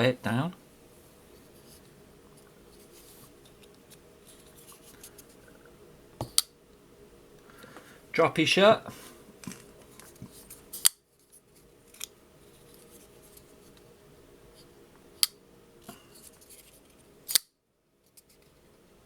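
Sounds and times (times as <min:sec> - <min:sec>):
folding knife clicking: 0:17.3 - 0:17.5.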